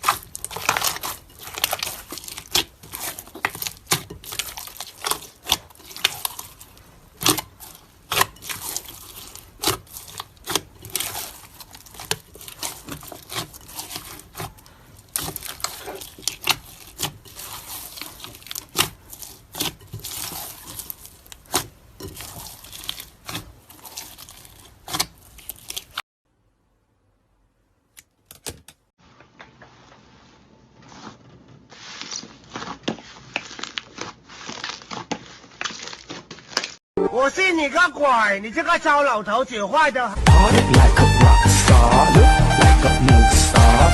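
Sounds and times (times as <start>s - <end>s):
slime squished by hand: 0.0s - 26.0s.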